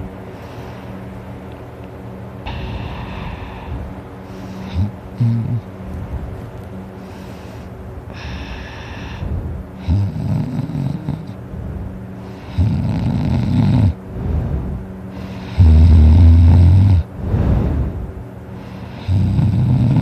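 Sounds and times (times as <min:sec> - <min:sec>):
person snoring loudly: 0:04.6 - 0:05.7, 0:09.8 - 0:11.4, 0:12.4 - 0:14.0, 0:15.2 - 0:17.1, 0:18.6 - 0:20.0.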